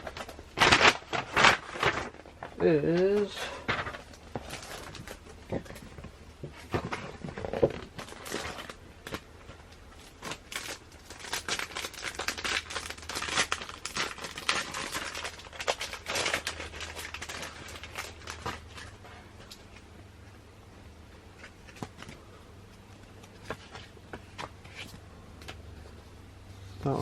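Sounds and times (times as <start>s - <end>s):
packaging crinkling and rustling: 0.0s - 19.9s.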